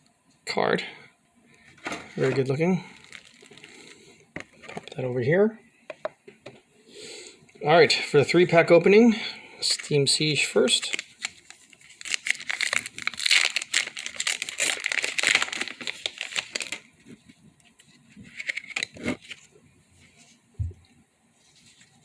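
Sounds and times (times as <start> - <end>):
foil wrapper crinkling and tearing: 2.2 - 4.9, 9.7 - 17.0, 17.8 - 19.4.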